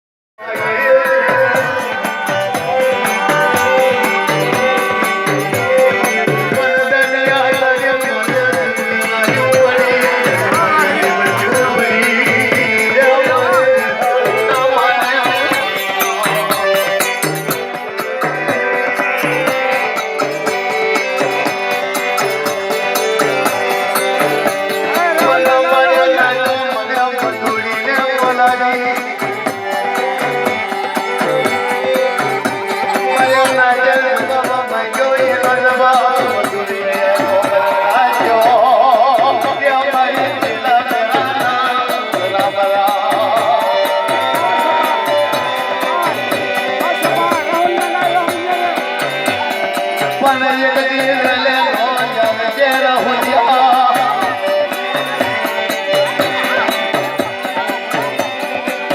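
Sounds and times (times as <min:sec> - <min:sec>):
rattling percussion: 0:00.4 - 0:58.9
regular drum beat: 0:00.8 - 0:58.2
wavering melody line: 0:01.2 - 0:39.6.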